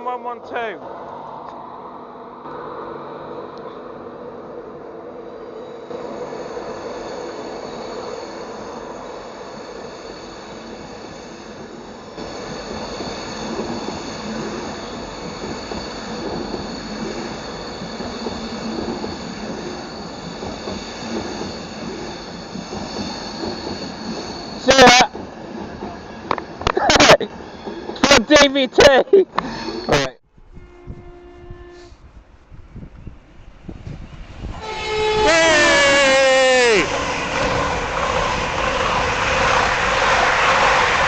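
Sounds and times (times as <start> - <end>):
train wheels rumbling on rails: 2.4 - 30.0, 31.8 - 41.0
high ringing tone: 4.7 - 26.5, 27.4 - 31.9.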